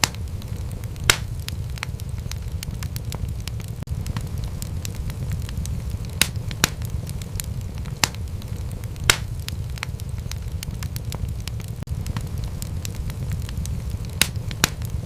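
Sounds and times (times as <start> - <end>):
low rumble of flames: 0.0 - 15.0
wood fire crackling and popping: 0.0 - 15.0.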